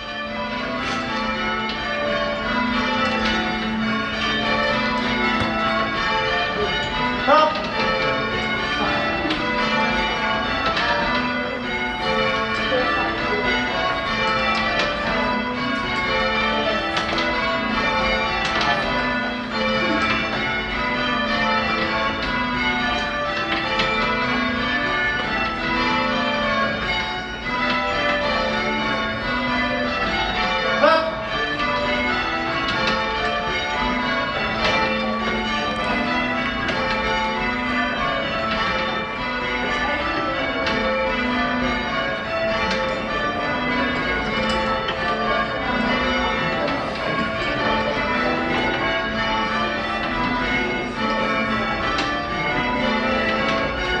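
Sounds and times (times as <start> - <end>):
church bells change ringing: 0.0 - 54.0.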